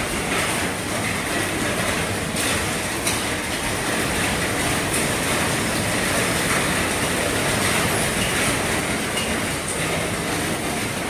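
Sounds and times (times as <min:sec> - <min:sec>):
heavy rain on a roof: 0:00.0 - 0:11.0.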